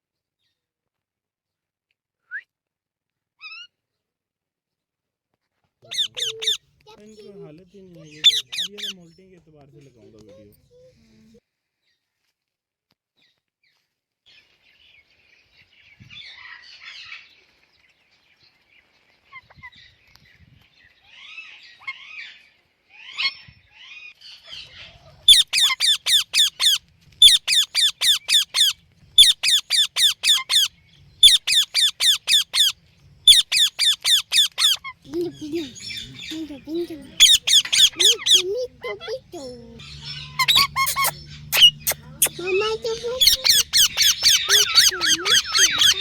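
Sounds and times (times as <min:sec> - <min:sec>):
parrot sharp chirps: 0:05.9 - 0:06.6, 0:08.1 - 0:09.0, 0:25.3 - 0:46.0
parrot chattering: 0:05.9 - 0:07.4, 0:08.1 - 0:09.0, 0:25.3 - 0:46.0.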